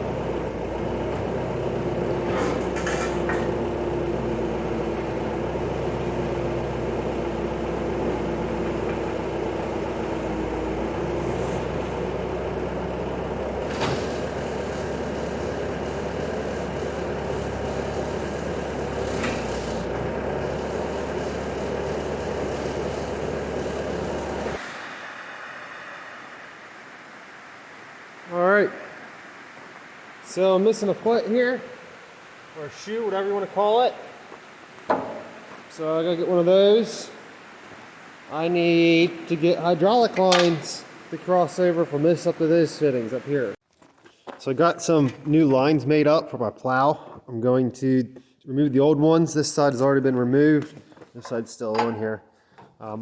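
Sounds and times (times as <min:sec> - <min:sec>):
machine humming: 0:00.0 - 0:43.6
sharp knocks: 0:34.9 - 0:35.5.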